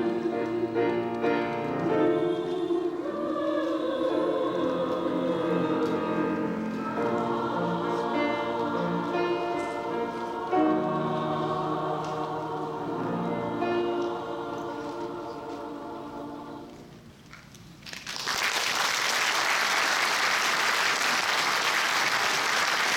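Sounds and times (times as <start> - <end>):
women's choir singing: 0.0 - 17.2.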